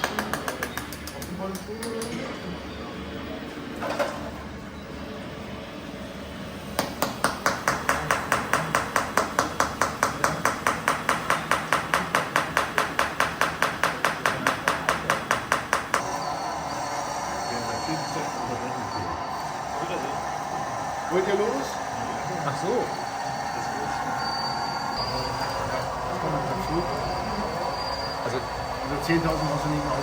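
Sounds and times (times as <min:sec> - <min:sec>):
rapid mechanical hammering: 0:00.0 - 0:02.2, 0:06.7 - 0:16.2.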